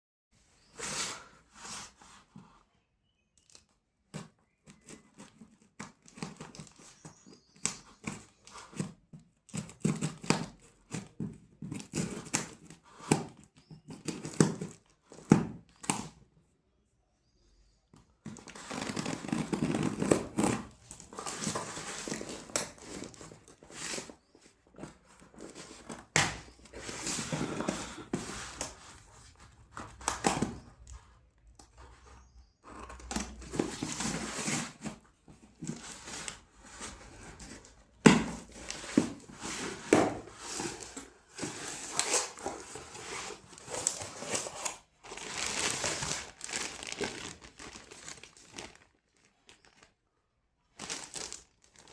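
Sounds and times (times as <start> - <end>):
packaging crinkling and rustling: 18.2 - 51.9.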